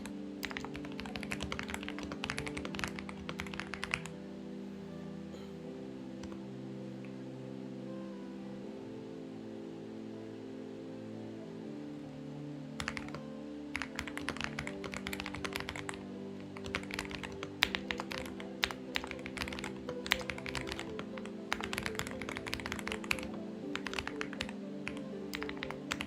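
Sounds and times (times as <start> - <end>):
mechanical keyboard typing: 0.0 - 4.1, 12.8 - 26.0
soft background music: 0.0 - 26.0.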